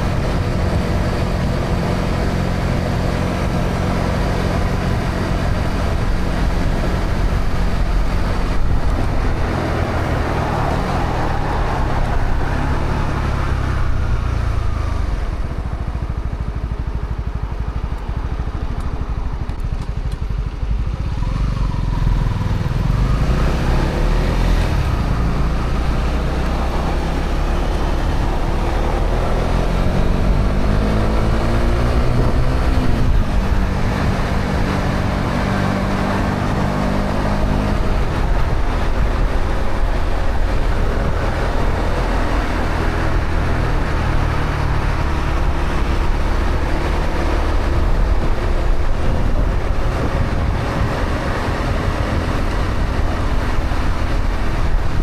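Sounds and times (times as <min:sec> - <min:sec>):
wind and road noise: 0:00.0 - 0:55.0
motorcycle engine revving: 0:17.7 - 0:55.0.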